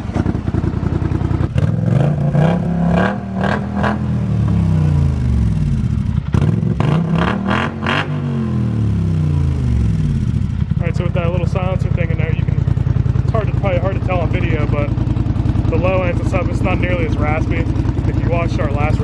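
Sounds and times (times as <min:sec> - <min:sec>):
atv engine revving: 0:00.0 - 0:19.0.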